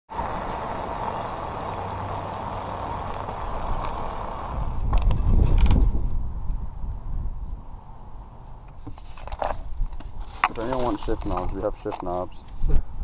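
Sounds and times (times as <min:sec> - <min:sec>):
car engine running: 0:00.1 - 0:04.9
sharp clicks: 0:02.8 - 0:05.8.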